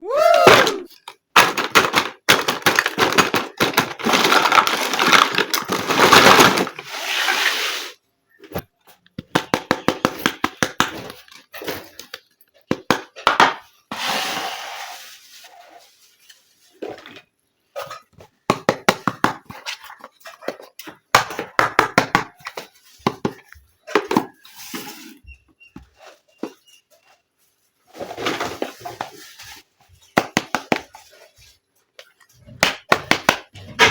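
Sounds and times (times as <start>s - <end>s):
packaging crinkling and rustling: 1.0s - 6.9s.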